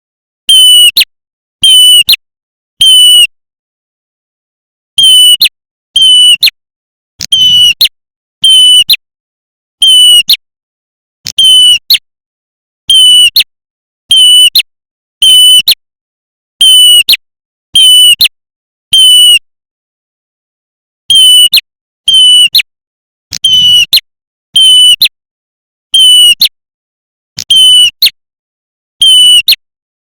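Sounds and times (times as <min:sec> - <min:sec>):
recorded bird call: 0:00.5 - 0:02.2, 0:05.0 - 0:06.5, 0:07.3 - 0:09.0, 0:09.8 - 0:10.4, 0:11.3 - 0:12.0, 0:12.9 - 0:13.5, 0:14.1 - 0:15.8, 0:16.6 - 0:17.2, 0:17.8 - 0:18.3, 0:21.1 - 0:22.6, 0:23.4 - 0:24.0, 0:26.0 - 0:26.5, 0:27.4 - 0:28.1, 0:29.0 - 0:29.6.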